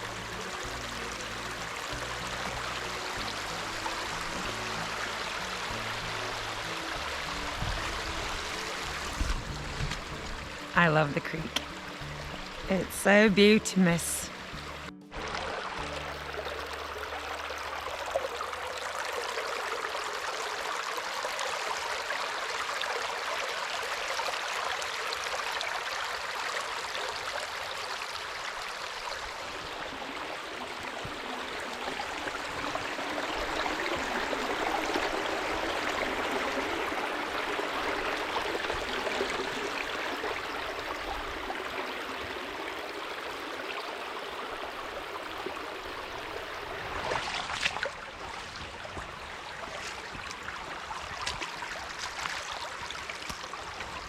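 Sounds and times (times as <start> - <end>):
creek water flowing: 0.0 - 54.0.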